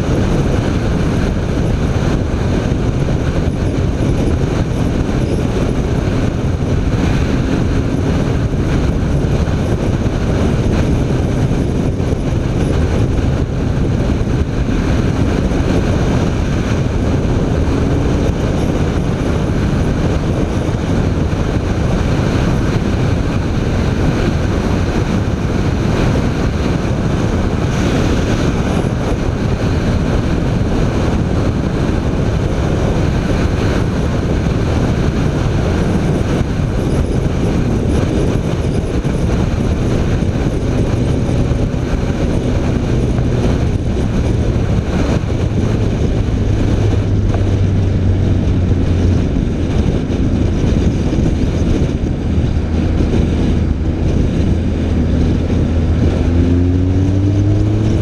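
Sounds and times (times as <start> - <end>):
motorcycle engine running: 0.0 - 58.0
wind rushing: 0.0 - 58.0.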